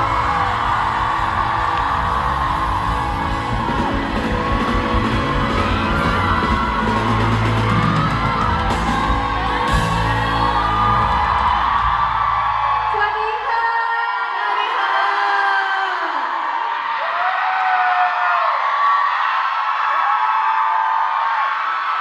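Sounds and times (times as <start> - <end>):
pop song over sound system: 0.0 - 16.4
crowd screaming and cheering: 0.0 - 22.0.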